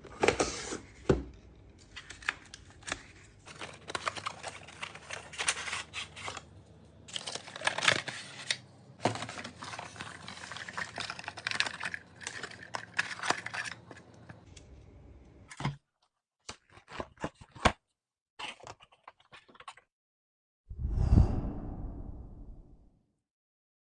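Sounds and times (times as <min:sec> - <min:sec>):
paper and plastic rustling: 0:00.0 - 0:14.5.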